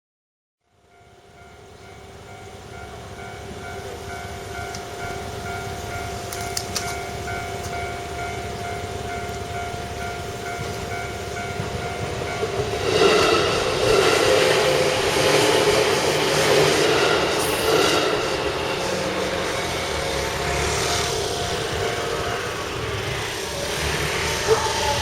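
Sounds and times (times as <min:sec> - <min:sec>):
approaching train: 0:00.7 - 0:25.0
level crossing bell ringing: 0:01.0 - 0:13.8.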